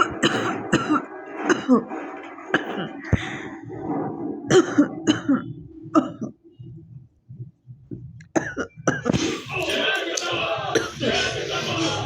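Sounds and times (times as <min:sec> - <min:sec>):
woman coughing: 0:00.0 - 0:01.8, 0:08.3 - 0:09.3.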